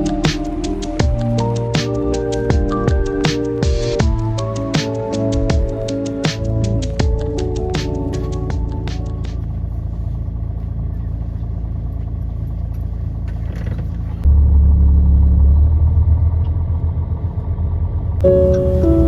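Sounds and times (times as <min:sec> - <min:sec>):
background music: 0:00.0 - 0:09.5, 0:18.2 - 0:19.0
road vehicle rumble: 0:00.0 - 0:19.0.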